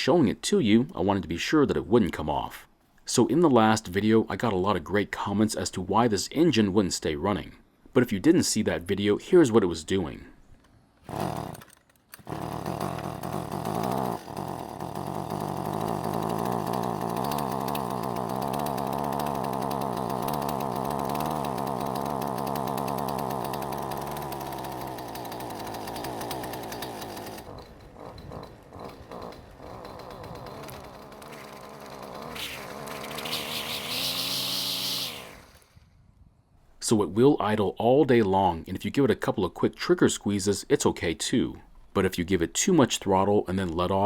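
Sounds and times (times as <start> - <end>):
string trimmer engine revving: 11.0 - 35.9.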